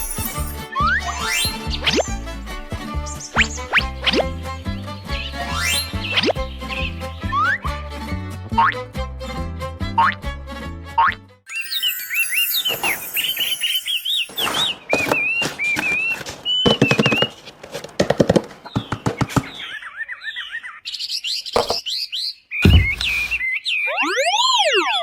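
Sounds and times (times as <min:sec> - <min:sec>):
whistle rising and falling: 0:00.0 - 0:02.1, 0:05.2 - 0:06.3, 0:11.5 - 0:14.7
small birds chirping: 0:11.5 - 0:15.0
heavy thud: 0:22.6 - 0:23.3.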